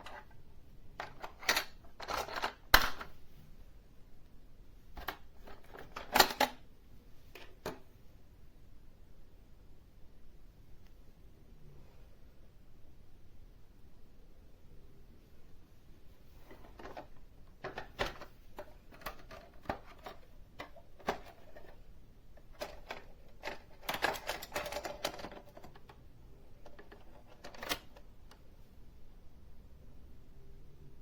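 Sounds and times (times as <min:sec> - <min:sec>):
plastic toy parts clicking: 0:01.0 - 0:03.2, 0:05.0 - 0:06.6, 0:16.6 - 0:21.8, 0:22.4 - 0:26.0, 0:26.6 - 0:28.1.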